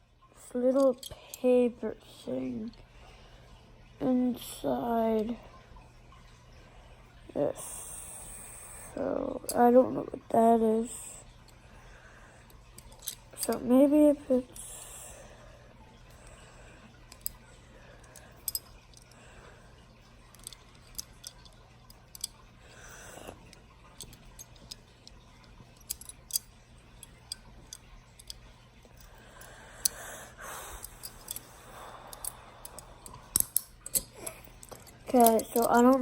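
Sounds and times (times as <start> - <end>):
handcuffs clicking: 12.8 - 13.6, 18.4 - 19.1, 20.3 - 22.3, 24.0 - 24.8, 25.8 - 28.4, 30.8 - 31.5, 32.2 - 36.0.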